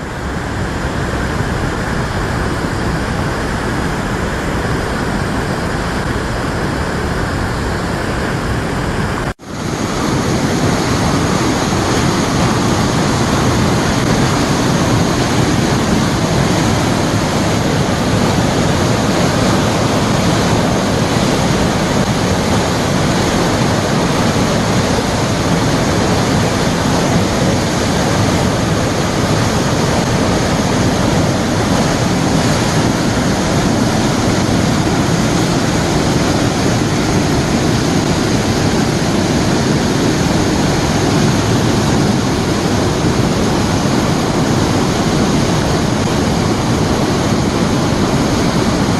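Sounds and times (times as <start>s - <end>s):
waterfall rushing: 0.0s - 48.9s.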